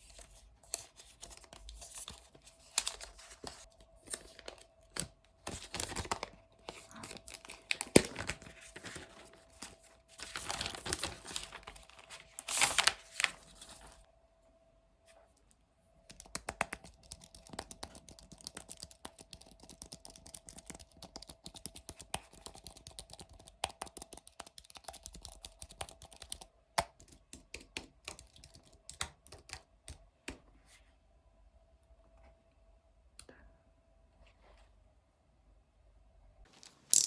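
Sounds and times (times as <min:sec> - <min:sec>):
computer keyboard typing: 0:16.1 - 0:30.0.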